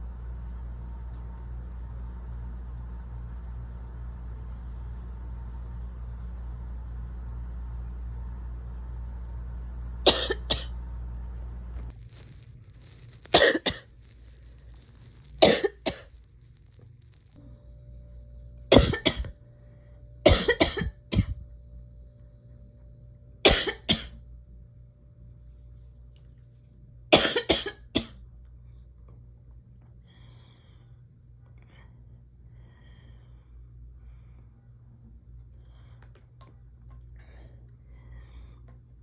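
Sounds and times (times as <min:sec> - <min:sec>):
person coughing: 0:10.1 - 0:10.7, 0:13.4 - 0:13.9, 0:15.4 - 0:16.1, 0:18.7 - 0:19.3, 0:20.3 - 0:21.4, 0:23.5 - 0:24.2, 0:27.1 - 0:28.2.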